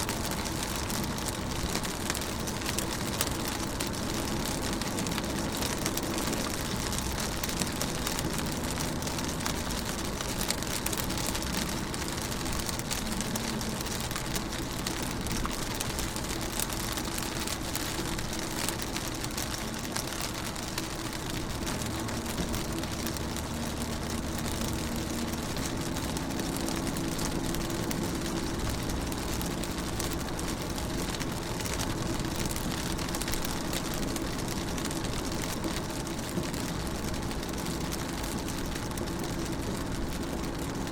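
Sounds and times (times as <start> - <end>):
rain tapping on a window: 0.0 - 40.9.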